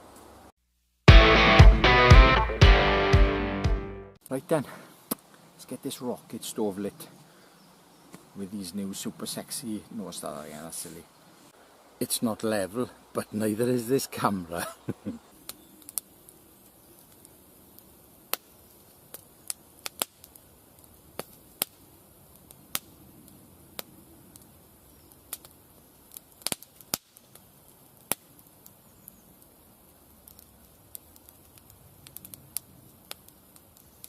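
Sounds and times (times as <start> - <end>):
wood fire crackling: 4.2 - 34.0
sharp pops of fire: 5.0 - 5.3, 15.3 - 34.0.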